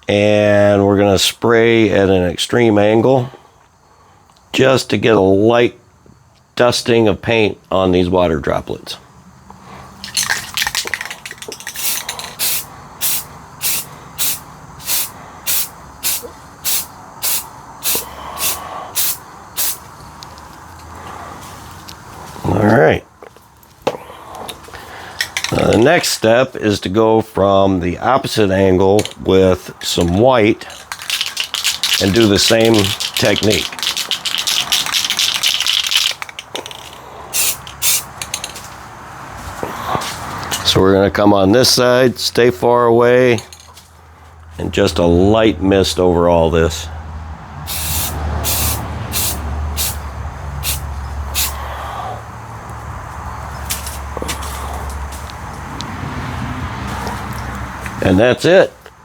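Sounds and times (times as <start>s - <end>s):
spray paint can hissing puffs: 10.2s - 19.9s, 30.8s - 38.3s, 47.7s - 51.6s
sharp clicks: 30.8s - 38.5s.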